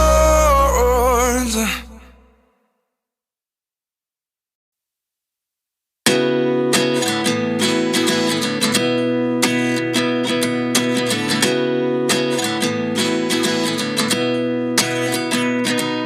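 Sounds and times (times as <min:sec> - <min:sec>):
strummed acoustic guitar pop music: 0:00.0 - 0:02.2, 0:06.1 - 0:16.0.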